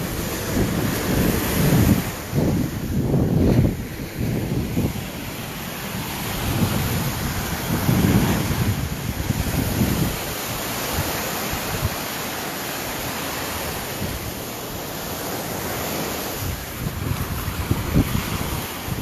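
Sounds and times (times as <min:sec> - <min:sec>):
ocean surf washing on beach: 0:00.0 - 0:19.0
wind buffeting microphone: 0:00.0 - 0:19.0.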